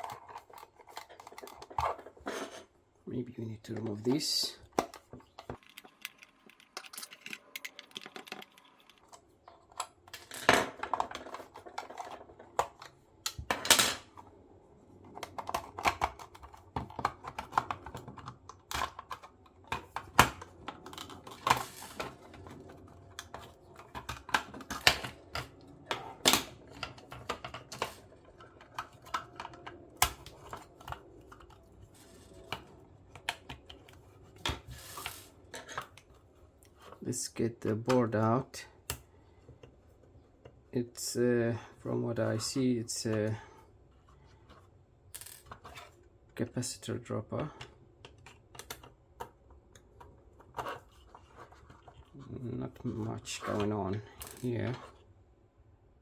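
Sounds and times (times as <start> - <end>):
plastic lamp parts clicking: 4.8 - 9.9.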